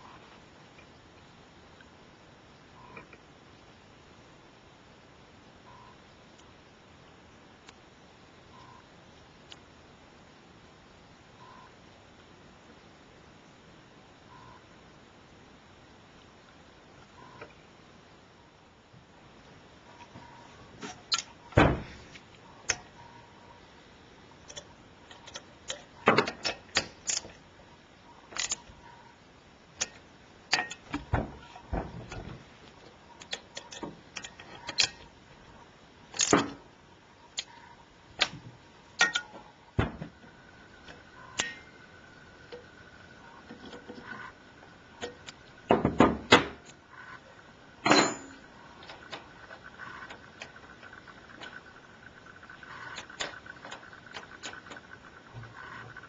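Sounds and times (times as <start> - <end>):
faint steady high tone: 5.6 - 6.2, 11.3 - 11.9, 13.3 - 15.0, 17.0 - 17.7, 19.8 - 21.6, 47.8 - 53.9
small parts and tools clinking: 24.4 - 27.4, 28.3 - 28.8, 29.8 - 32.3, 33.2 - 35.2, 36.1 - 36.6, 39.0 - 39.4, 47.8 - 49.6.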